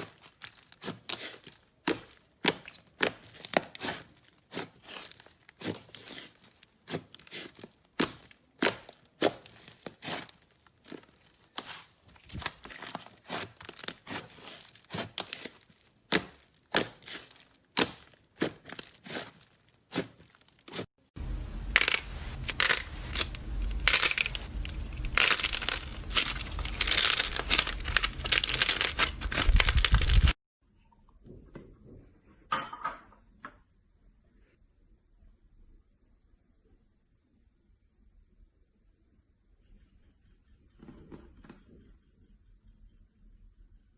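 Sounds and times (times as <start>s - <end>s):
slime squishing: 0.0s - 30.4s.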